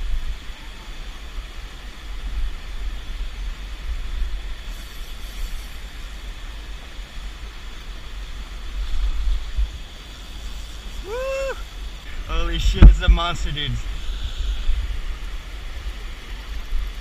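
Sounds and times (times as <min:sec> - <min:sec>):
wind buffeting microphone: 0:07.2 - 0:17.0.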